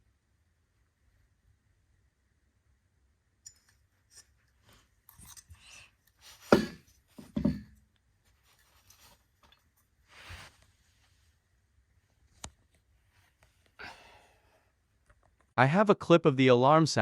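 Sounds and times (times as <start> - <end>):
heavy thumps: 6.5 - 7.7.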